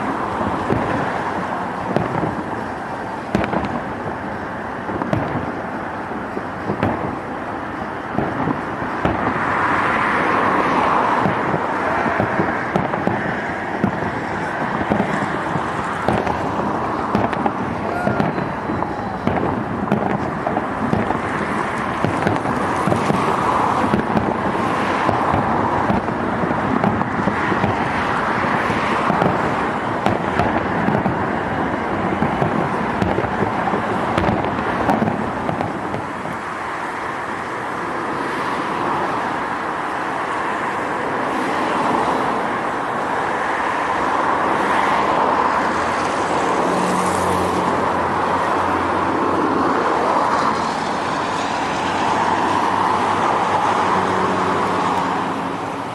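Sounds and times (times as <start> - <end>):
fireworks popping and crackling: 0.0 - 55.9
fireworks rumble: 0.0 - 55.9
road traffic passing: 0.0 - 55.9.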